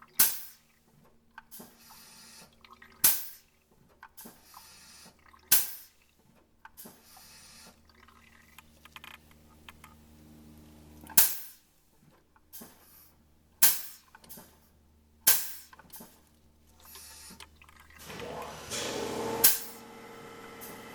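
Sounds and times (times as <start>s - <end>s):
faint steady low hum: 6.0s - 18.0s
short sharp hissing bursts: 6.8s - 7.8s.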